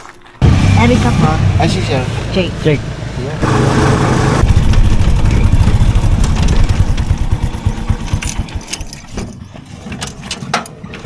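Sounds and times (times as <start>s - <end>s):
motorcycle engine running: 0.4s - 9.0s.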